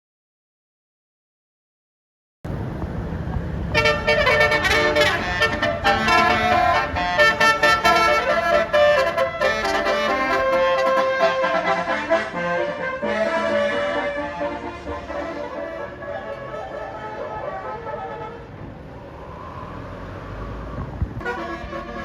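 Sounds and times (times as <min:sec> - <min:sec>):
multi-tone air horn tune: 0:03.7 - 0:18.6, 0:21.2 - 0:22.0.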